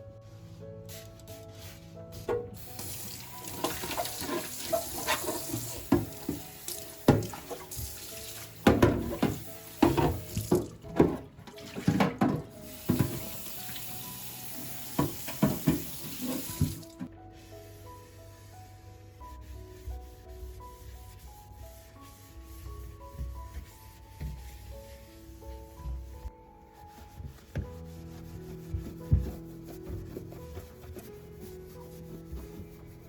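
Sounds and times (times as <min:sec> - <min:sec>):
soft background music: 0:00.0 - 0:33.0
clatter of items being rinsed: 0:02.3 - 0:13.5, 0:14.9 - 0:17.1
tap running into a sink: 0:02.3 - 0:13.8, 0:14.9 - 0:17.1.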